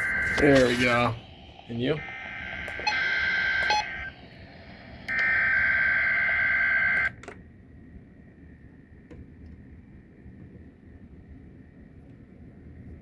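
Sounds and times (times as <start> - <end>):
two-tone digital warble bursts: 0.0 - 7.1
faint radio hiss: 0.0 - 8.6.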